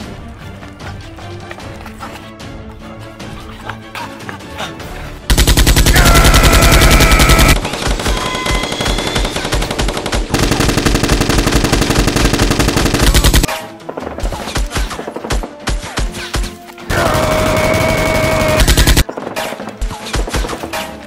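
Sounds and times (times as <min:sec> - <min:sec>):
background music: 0:00.0 - 0:21.0
rapid automatic gunfire: 0:05.3 - 0:13.5, 0:17.0 - 0:19.2.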